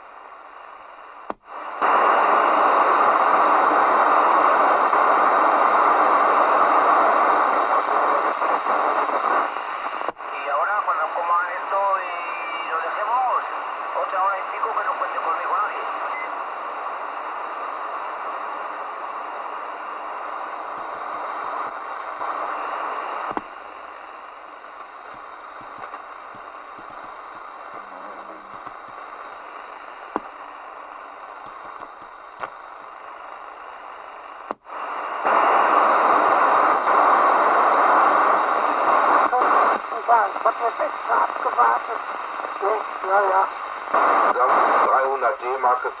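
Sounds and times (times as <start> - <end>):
radio crackles and clicks: 0.0 - 46.0
radio speaker static hiss: 0.0 - 46.0.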